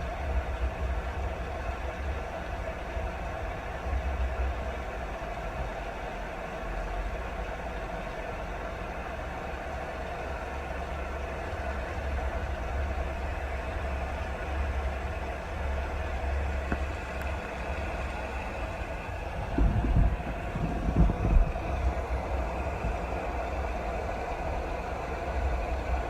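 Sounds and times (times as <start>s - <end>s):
steady rain: 0.0s - 26.0s
low rumble: 11.6s - 26.0s.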